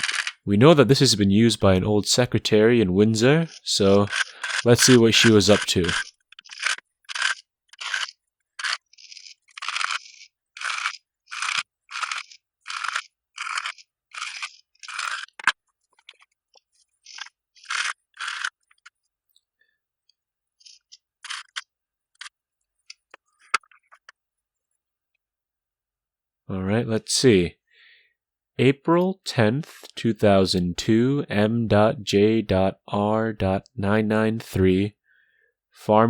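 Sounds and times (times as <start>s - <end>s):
small ticks: 0.0s - 0.4s, 3.2s - 19.5s, 20.1s - 24.2s.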